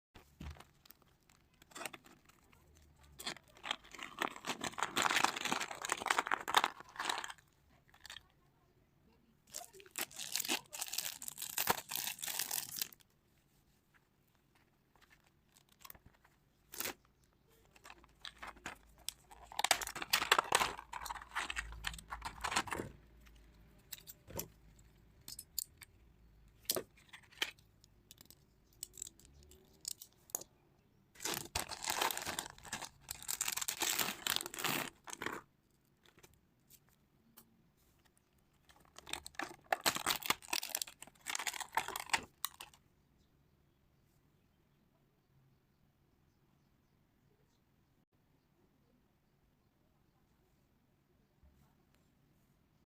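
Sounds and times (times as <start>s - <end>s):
packaging tearing and crinkling: 0.6s - 7.4s, 9.5s - 13.0s, 16.7s - 17.0s, 17.7s - 22.9s, 31.2s - 35.4s, 38.6s - 42.8s.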